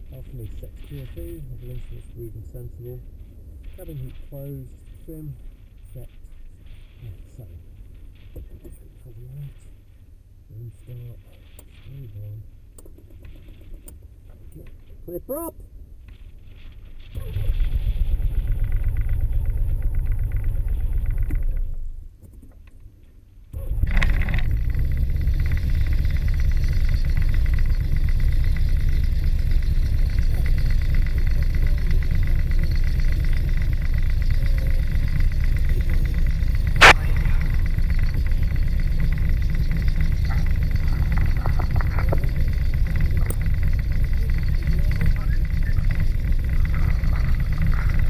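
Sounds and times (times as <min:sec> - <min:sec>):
piston engine running: 0:17.2 - 0:21.8, 0:23.6 - 0:48.0
sharp click: 0:36.7 - 0:38.4.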